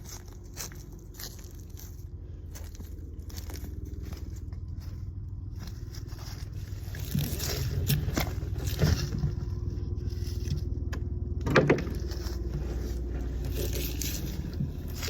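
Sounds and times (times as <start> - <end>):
small engine running: 0.0 - 15.0
knocks and scrapes: 5.6 - 15.0.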